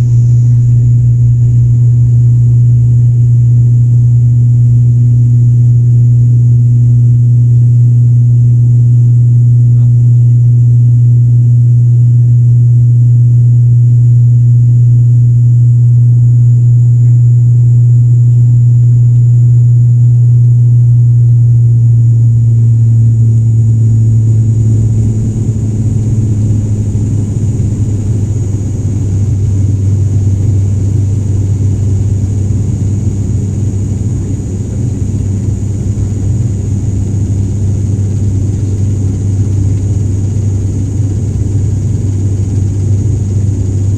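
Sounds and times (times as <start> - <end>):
turboprop engines droning: 0.0 - 43.9.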